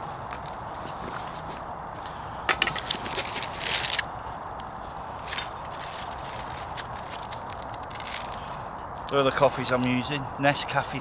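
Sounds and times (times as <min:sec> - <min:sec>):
clicks and rattles of gear: 0:02.5 - 0:04.1, 0:05.2 - 0:09.2
packet rustling: 0:02.5 - 0:04.1, 0:05.2 - 0:09.2.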